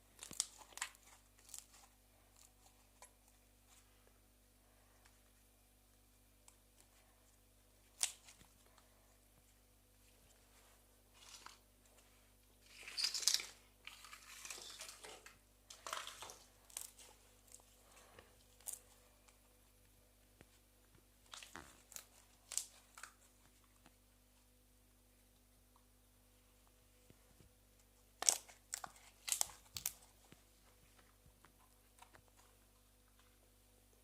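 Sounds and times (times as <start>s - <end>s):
slime crackling and popping: 28.2s - 30.0s.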